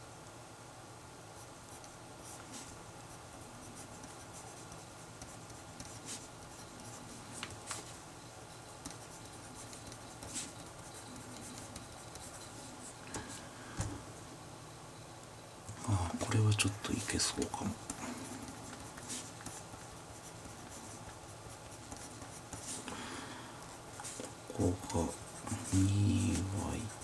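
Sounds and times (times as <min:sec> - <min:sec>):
faint background hum: 0:00.0 - 0:27.0
pen scratching on paper: 0:01.7 - 0:13.0, 0:17.5 - 0:22.9, 0:23.7 - 0:27.0.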